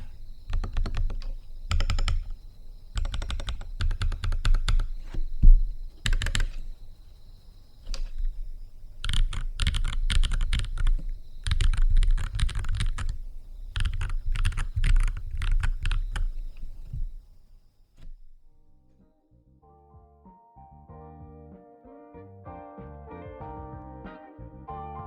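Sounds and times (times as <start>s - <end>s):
mechanical keyboard key clacks: 0.0s - 5.1s, 5.9s - 6.8s, 9.0s - 16.8s.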